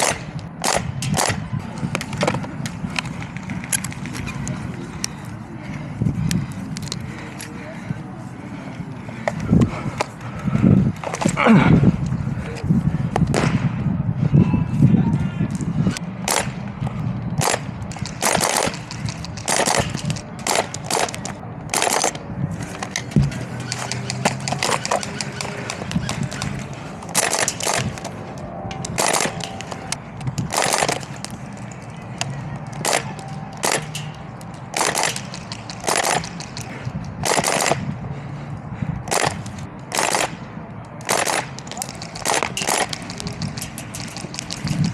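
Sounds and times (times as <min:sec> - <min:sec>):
airsoft guns firing: 0:00.0 - 0:02.4, 0:13.3 - 0:13.7, 0:16.2 - 0:16.6, 0:17.4 - 0:22.2, 0:22.8 - 0:28.2, 0:28.9 - 0:31.8, 0:32.7 - 0:37.8, 0:39.1 - 0:44.9.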